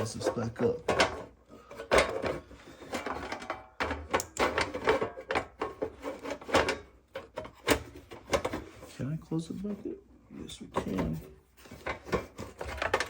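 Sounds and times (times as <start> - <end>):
plastic casing clicks and clatter: 0.0 - 8.7, 11.8 - 13.0.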